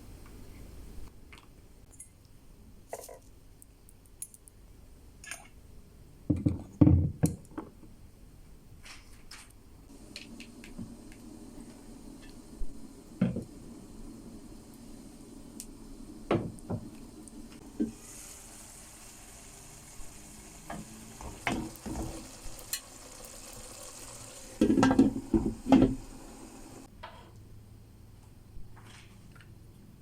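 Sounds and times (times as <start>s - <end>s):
food sizzling in a frying pan: 9.9s - 26.9s.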